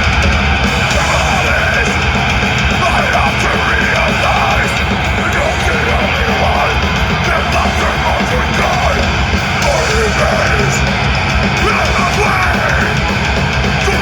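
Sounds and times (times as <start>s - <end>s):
death metal band playing live: 0.0s - 14.0s
distorted guitars: 0.0s - 14.0s
fast drums: 0.0s - 14.0s.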